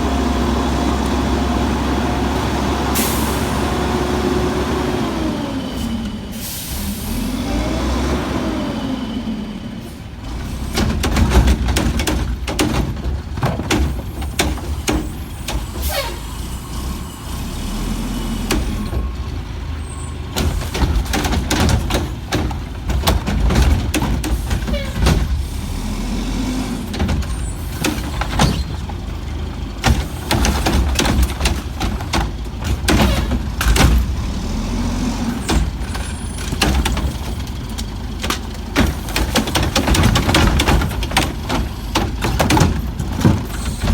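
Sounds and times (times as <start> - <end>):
garbage truck engine revving: 0.0 - 43.9
air brakes hissing: 2.9 - 3.7, 5.6 - 7.4, 14.2 - 18.9.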